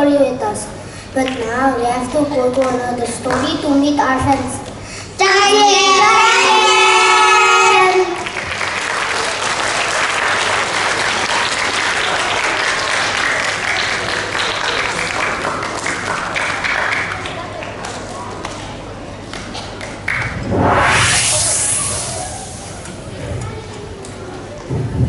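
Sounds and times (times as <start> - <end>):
audience applauding: 8.1 - 17.8.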